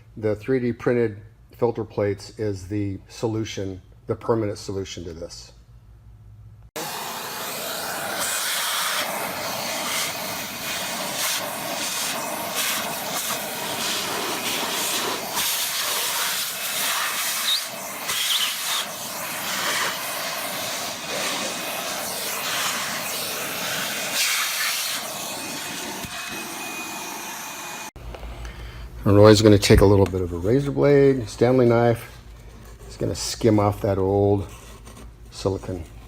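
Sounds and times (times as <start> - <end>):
vacuum cleaner sucking: 6.8 - 28.0.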